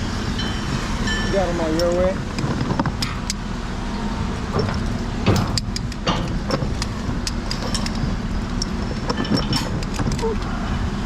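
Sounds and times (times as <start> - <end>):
heavy machinery engine drone: 0.0 - 11.0
metal bolts clinking: 0.4 - 3.4, 4.5 - 10.4.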